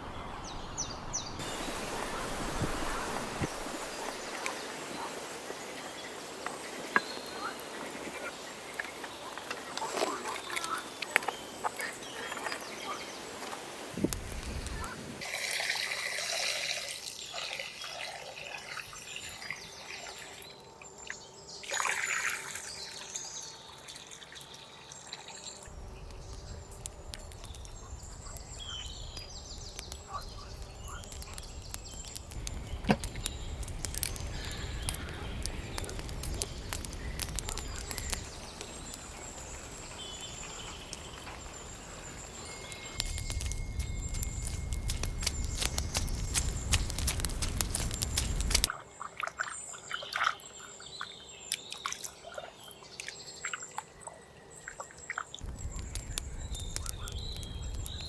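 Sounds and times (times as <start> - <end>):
birds calling: 0.0 - 58.0
small scattered ticks: 1.4 - 14.9, 22.7 - 58.0
water trickling and dripping: 1.4 - 58.0
low rumble: 42.9 - 48.7, 55.4 - 58.0.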